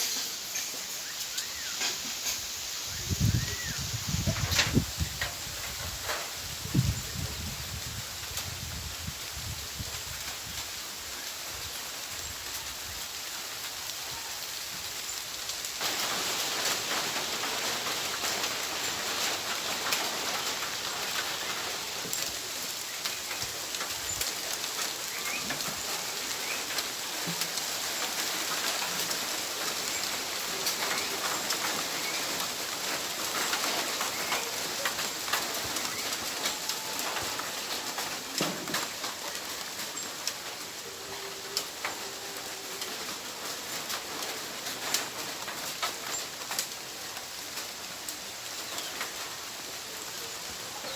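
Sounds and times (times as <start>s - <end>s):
rain pattering: 0.0s - 50.9s.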